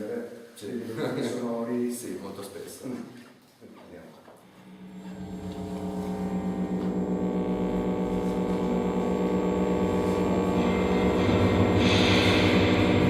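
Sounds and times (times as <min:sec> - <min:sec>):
electronic droning tone pulsing: 0:04.5 - 0:13.0
hissing noise: 0:04.6 - 0:13.0.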